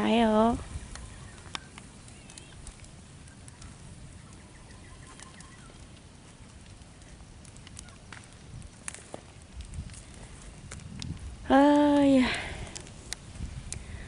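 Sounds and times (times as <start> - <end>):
small clicks and rustles: 0.0 - 14.0
faint bird chirps: 0.7 - 2.6, 3.2 - 5.8.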